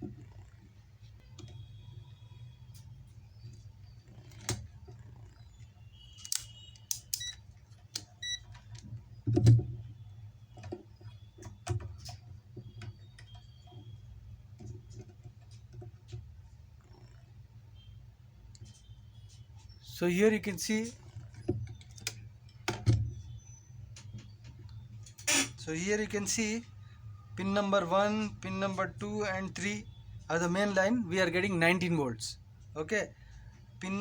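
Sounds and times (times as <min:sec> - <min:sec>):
short electronic beeps: 0:08.2 - 0:08.4.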